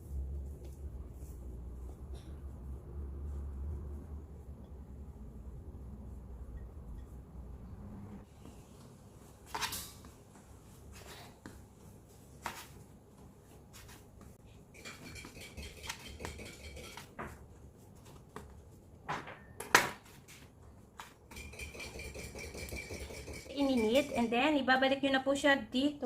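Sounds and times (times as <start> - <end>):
kitchen bowls and utensils clinking: 14.7 - 17.4, 21.0 - 24.9.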